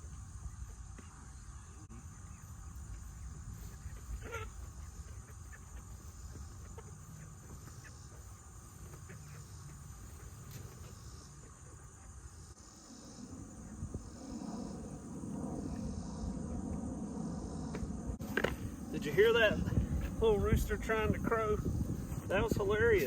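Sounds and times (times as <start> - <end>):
insects and crickets chirring: 0.0 - 23.0
chickens: 2.0 - 12.1.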